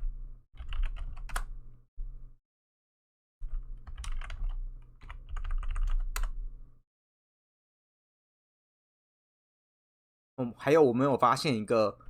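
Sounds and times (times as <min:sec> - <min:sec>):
typing on computer keyboard: 0:00.6 - 0:01.5, 0:03.4 - 0:06.4.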